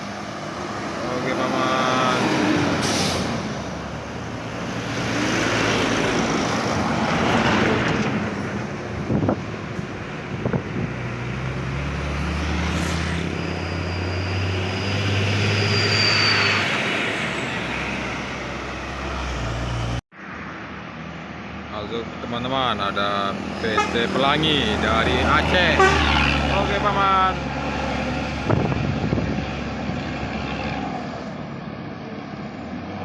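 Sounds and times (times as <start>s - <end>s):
road traffic passing: 0.0s - 33.0s
diesel engine droning: 21.2s - 33.0s.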